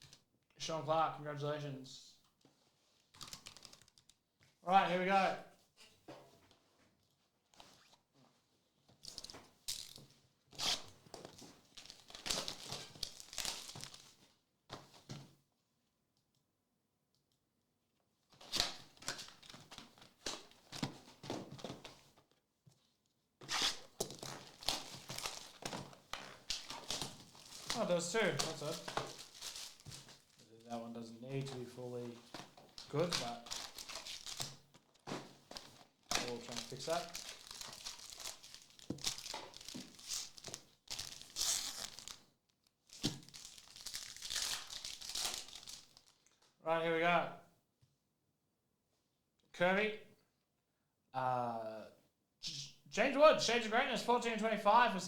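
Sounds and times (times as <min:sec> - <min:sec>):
foil wrappers tearing and crinkling: 0:11.8 - 0:14.0, 0:23.5 - 0:30.4, 0:32.2 - 0:34.6, 0:35.2 - 0:42.2, 0:42.9 - 0:46.3.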